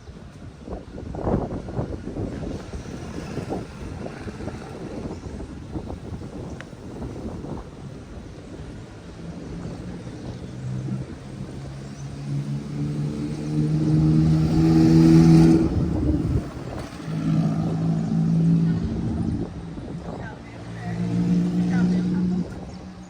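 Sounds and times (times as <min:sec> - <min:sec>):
vehicle engine humming: 0:01.8 - 0:23.0.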